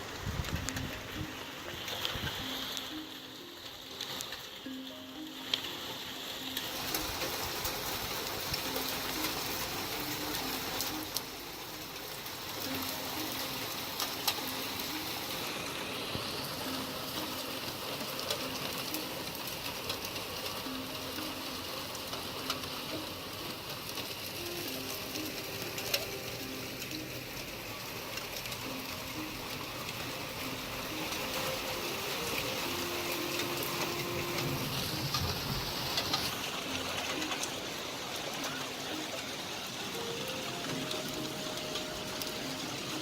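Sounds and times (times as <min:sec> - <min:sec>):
steady rain hissing: 0:00.0 - 0:43.0
dove cooing: 0:30.5 - 0:43.0.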